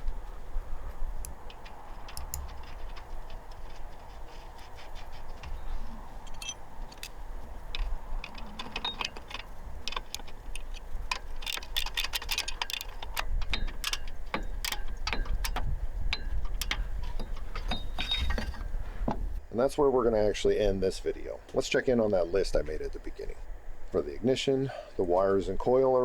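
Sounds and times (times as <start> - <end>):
hand tools clicking on metal: 0.0 - 19.4.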